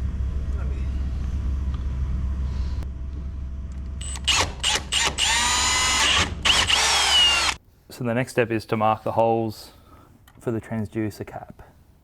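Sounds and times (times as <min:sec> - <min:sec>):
steady low rumble: 0:00.0 - 0:04.4
power drill whining: 0:04.0 - 0:07.6.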